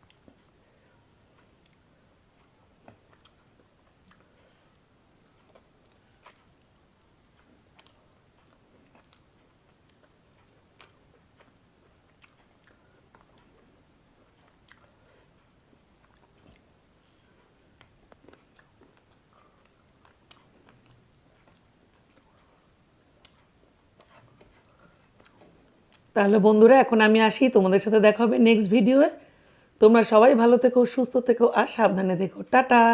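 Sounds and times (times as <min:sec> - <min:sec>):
person chewing food: 0:00.0 - 0:26.1.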